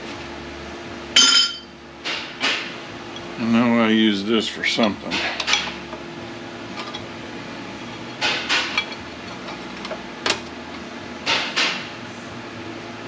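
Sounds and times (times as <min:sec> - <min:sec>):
steady low hum: 0:00.0 - 0:13.0
metal tools clanking on workbench: 0:01.2 - 0:01.7, 0:04.8 - 0:05.8, 0:06.7 - 0:07.1.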